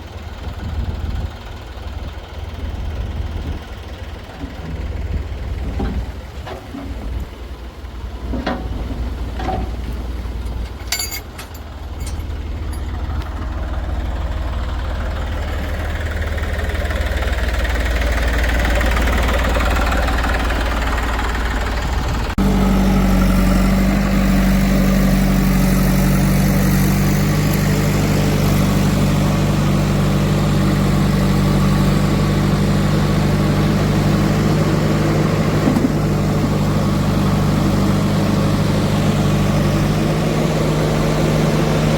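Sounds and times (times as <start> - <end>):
heavy diesel machinery running: 0.0 - 41.9
sharp metal clanks: 10.8 - 12.9.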